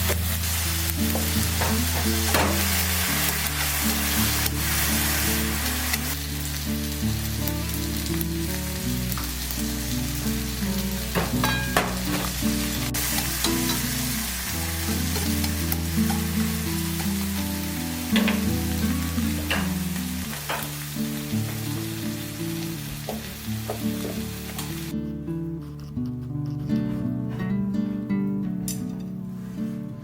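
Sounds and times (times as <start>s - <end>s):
food sizzling in a frying pan: 0.0s - 24.9s
soft background music: 0.0s - 25.9s
utensil clicking against pan: 15.0s - 17.3s.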